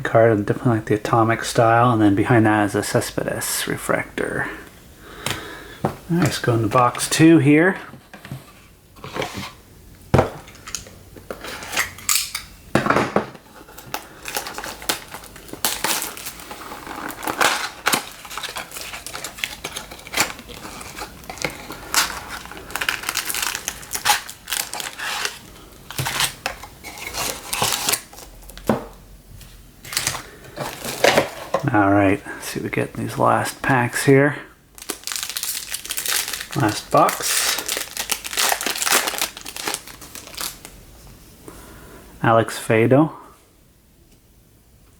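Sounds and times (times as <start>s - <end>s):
cardboard box being unpacked: 13.6s - 28.6s, 29.9s - 31.6s, 34.8s - 40.7s.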